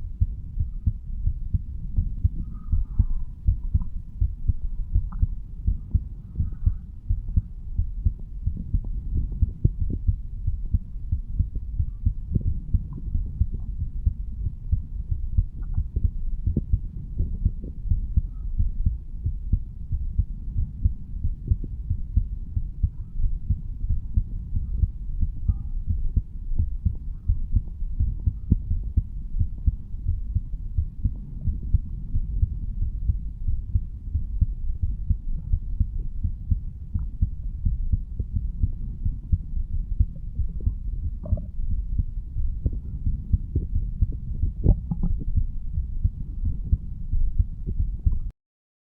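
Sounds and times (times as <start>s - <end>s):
low heartbeat: 0.0s - 48.3s.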